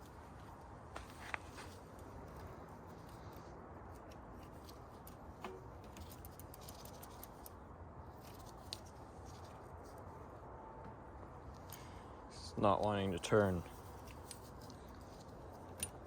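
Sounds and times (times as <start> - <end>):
low steady background noise: 0.0 - 16.0
bike chain metallic clicks: 5.9 - 7.6.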